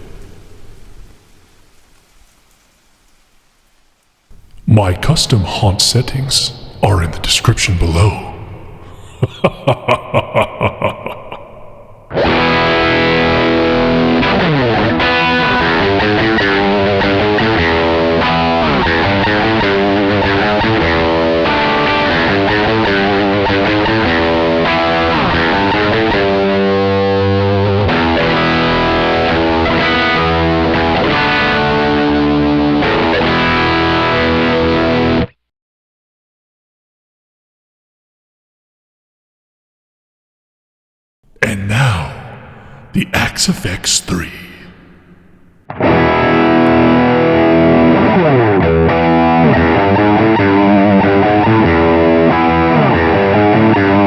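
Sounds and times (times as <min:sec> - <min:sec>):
distorted electric guitar riff: 0:11.9 - 0:19.0.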